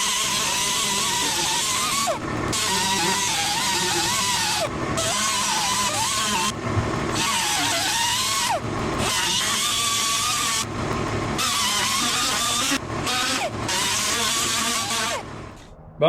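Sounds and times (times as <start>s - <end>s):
grinding tool cutting sheet metal: 0.0s - 15.6s.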